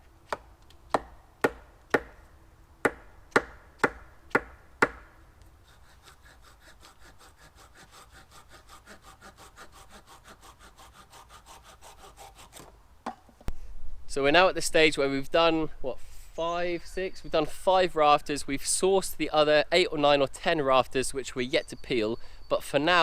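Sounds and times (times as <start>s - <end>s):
hand saw sawing wood: 2.8s - 12.7s.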